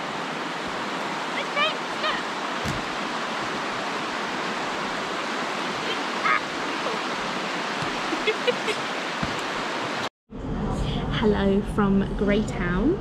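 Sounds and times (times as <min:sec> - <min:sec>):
stream water rushing: 0:00.0 - 0:10.1.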